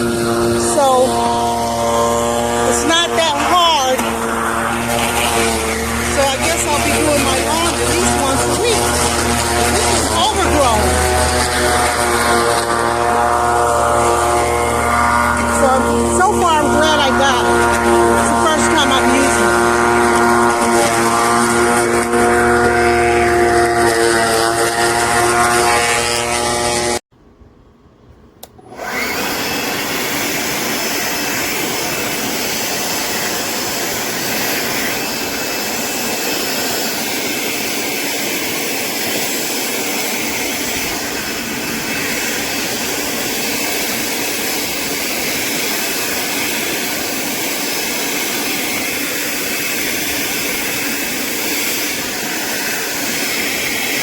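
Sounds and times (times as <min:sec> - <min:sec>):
electric mower motor whine: 0:00.0 - 0:27.0, 0:28.4 - 0:54.0
mower cutting tall grass: 0:00.0 - 0:27.0, 0:28.6 - 0:54.0.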